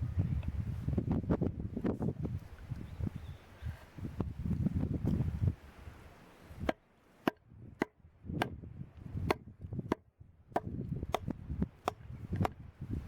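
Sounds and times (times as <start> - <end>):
firewood being chopped: 6.6 - 8.6, 9.2 - 12.6.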